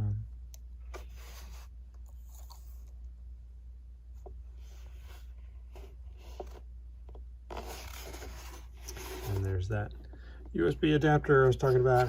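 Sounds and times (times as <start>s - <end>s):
steady low hum: 0.0s - 12.0s
rustling and rubbing of handled keyboard: 4.2s - 12.0s.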